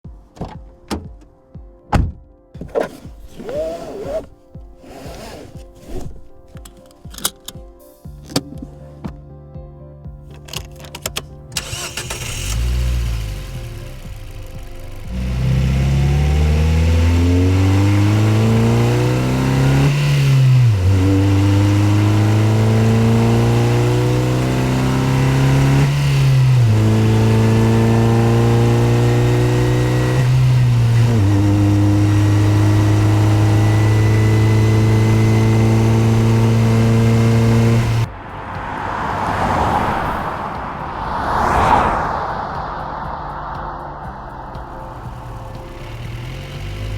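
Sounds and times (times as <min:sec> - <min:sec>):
car engine accelerating: 0:11.6 - 0:46.9
car pass-by whooshes: 0:37.8 - 0:45.6.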